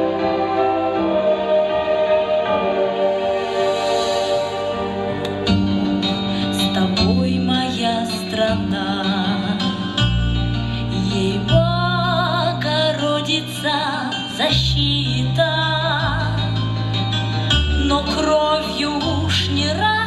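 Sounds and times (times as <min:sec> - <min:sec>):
sustained bass notes: 0:00.0 - 0:13.8
woman singing with vibrato: 0:06.4 - 0:10.0, 0:10.9 - 0:16.6, 0:17.8 - 0:20.0.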